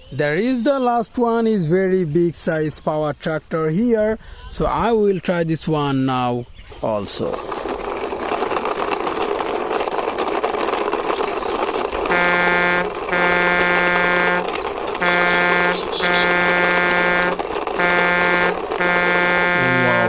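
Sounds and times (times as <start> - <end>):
toy truck wheels rattling: 6.7 - 20.0
buzzy toy horn blasts: 12.0 - 20.0.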